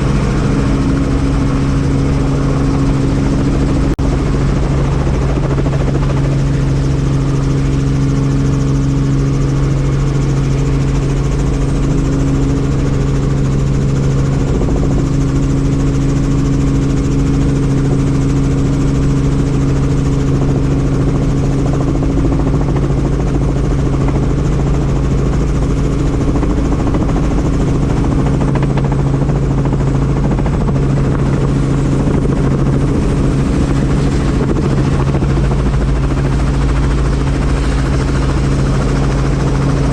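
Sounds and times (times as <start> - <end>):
helicopter engine and rotors: 0.0 - 39.9.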